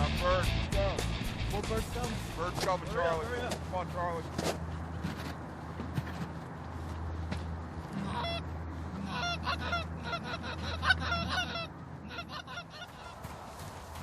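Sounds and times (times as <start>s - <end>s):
geese honking: 7.8s - 14.0s.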